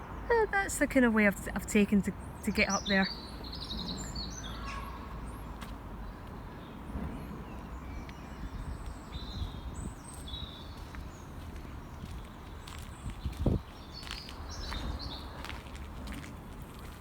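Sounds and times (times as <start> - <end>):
small birds chirping: 0.0 - 17.0
footsteps on a path: 5.1 - 7.3, 8.0 - 17.0.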